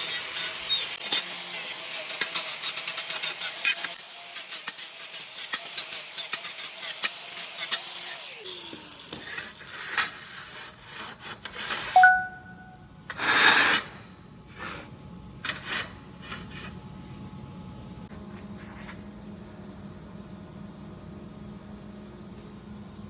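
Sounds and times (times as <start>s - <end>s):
short ding: 12.0s - 12.8s.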